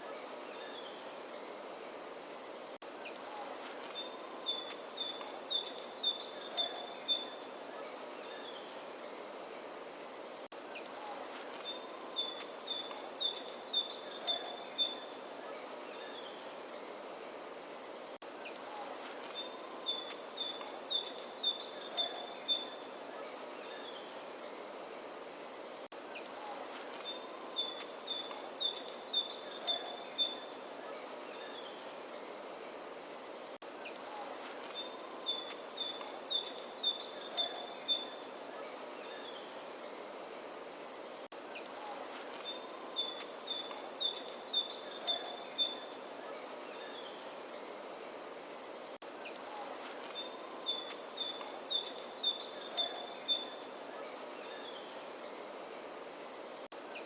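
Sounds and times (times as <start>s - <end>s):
faint background hiss: 0.0s - 57.0s
bird singing and chirping: 0.6s - 7.4s, 8.2s - 22.8s, 23.6s - 30.5s, 31.4s - 38.2s, 39.0s - 53.6s, 54.4s - 57.0s.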